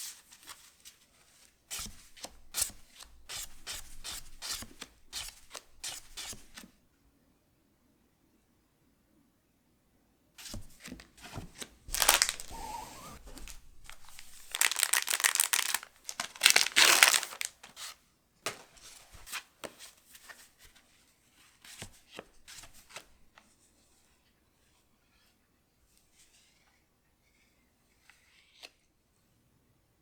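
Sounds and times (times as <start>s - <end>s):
light rustles of handling: 10.4s - 28.8s
foil wrapper tearing and crinkling: 11.9s - 12.6s, 13.9s - 17.7s.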